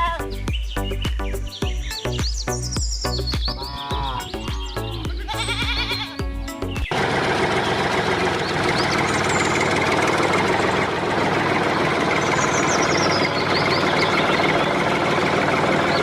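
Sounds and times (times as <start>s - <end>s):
motor running: 6.9s - 16.0s.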